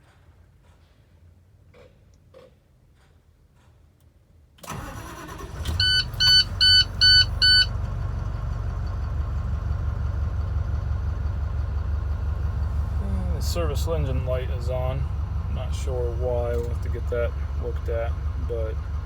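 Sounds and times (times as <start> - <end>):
diesel engine cranking and idling: 4.6 - 19.0
short loud warning beeps: 4.7 - 7.7.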